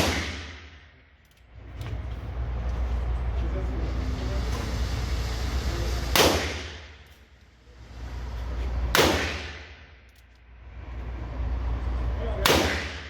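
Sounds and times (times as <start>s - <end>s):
handgun shots: 0.0s - 0.6s, 9.0s - 9.6s.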